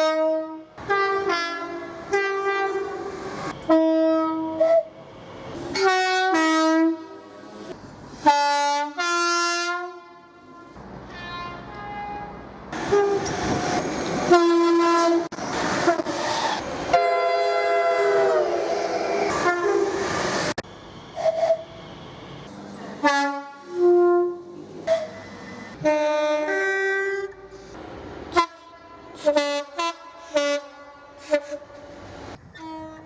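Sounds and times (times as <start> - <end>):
two-tone train horn blasts: 0.0 - 3.0, 3.6 - 4.9, 5.7 - 7.3, 8.2 - 13.6, 14.3 - 16.1, 16.9 - 18.5, 19.3 - 20.0, 23.0 - 25.2, 25.8 - 27.4, 28.3 - 31.9, 32.5 - 33.0
short train horn toots: 8.2 - 13.6, 16.9 - 18.5, 32.5 - 33.0.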